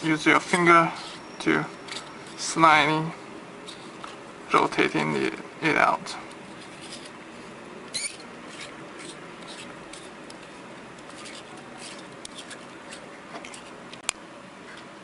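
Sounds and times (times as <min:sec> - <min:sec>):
fingers rubbing and clicking: 0:07.9 - 0:13.8.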